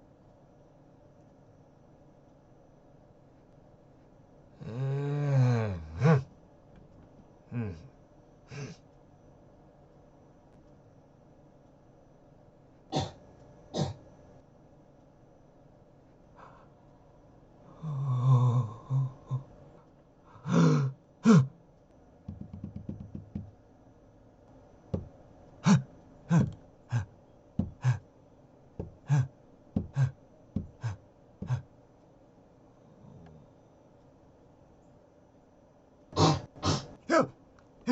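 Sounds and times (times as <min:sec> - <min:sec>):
person gasping or groaning: 0:04.6 - 0:06.3, 0:07.5 - 0:07.9, 0:08.5 - 0:08.8, 0:17.8 - 0:19.5, 0:20.3 - 0:21.5, 0:25.6 - 0:28.0, 0:28.8 - 0:31.6, 0:36.2 - 0:37.3
loud cough-like bursts: 0:12.9 - 0:13.2, 0:36.2 - 0:37.3.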